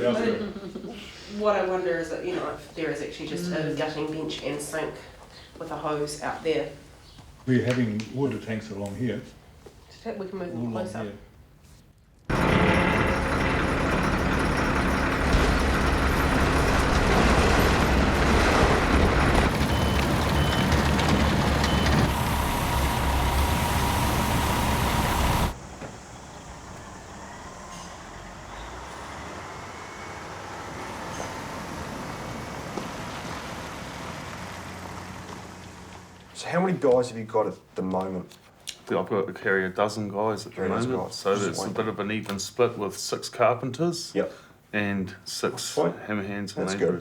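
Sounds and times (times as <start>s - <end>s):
heavy engine running: 12.3s - 36.3s.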